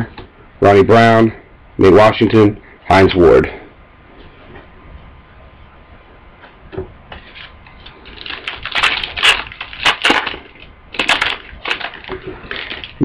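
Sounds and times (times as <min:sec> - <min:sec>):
foil wrapper crinkling and tearing: 0:07.2 - 0:13.0.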